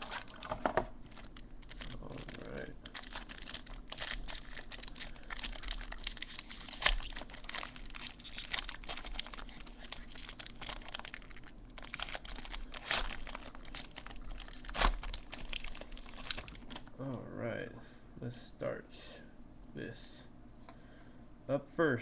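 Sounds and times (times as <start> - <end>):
card pack wrapper tearing and crinkling: 0.0 - 16.9.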